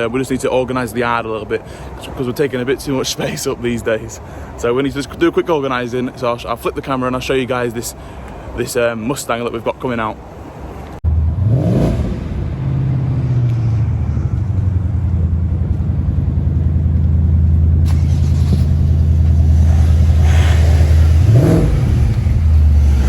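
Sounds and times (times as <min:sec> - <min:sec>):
car engine running: 0:11.0 - 0:23.0.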